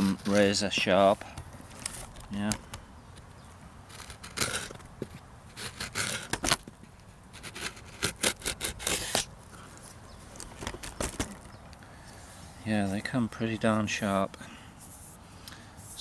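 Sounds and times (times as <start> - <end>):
knife blade scraping slices: 7.4 - 9.3.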